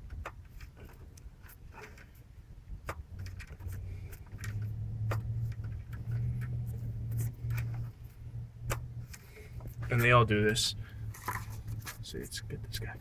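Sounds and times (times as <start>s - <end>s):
low hum: 3.8s - 13.0s.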